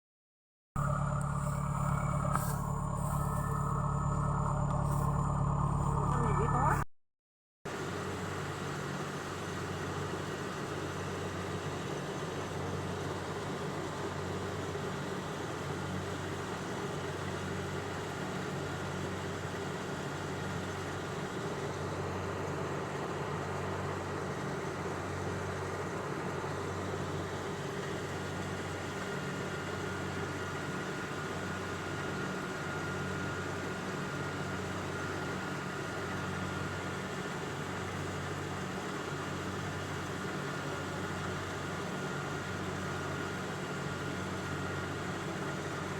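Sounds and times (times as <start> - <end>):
faint high whine: 0.8 - 6.8
engine humming in pulses: 0.8 - 6.9, 7.7 - 45.9.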